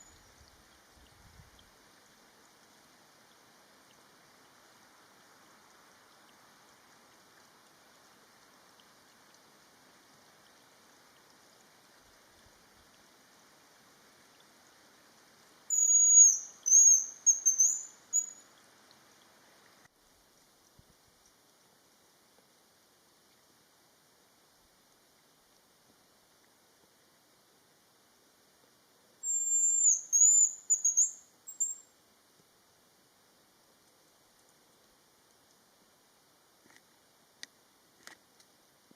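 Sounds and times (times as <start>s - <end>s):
faint background hiss: 0.0s - 38.9s
bird high thin whistles: 15.7s - 18.4s, 29.2s - 31.8s.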